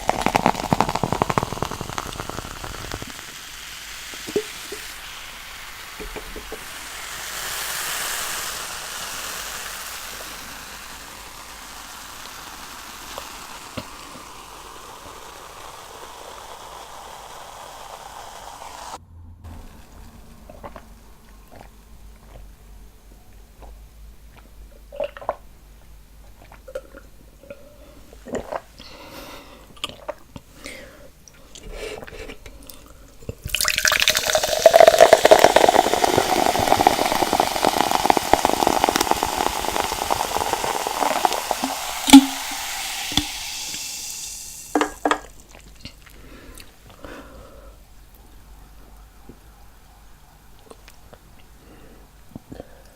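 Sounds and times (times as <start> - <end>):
stream of liquid running: 0.0 - 22.6, 33.3 - 47.0.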